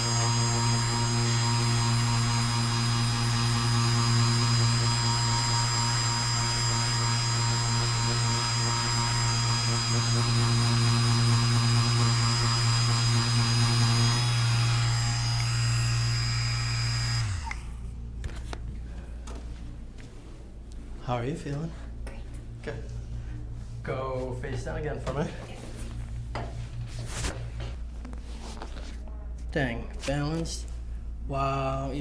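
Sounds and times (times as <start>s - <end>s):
machine humming with high whine: 0.0s - 19.4s.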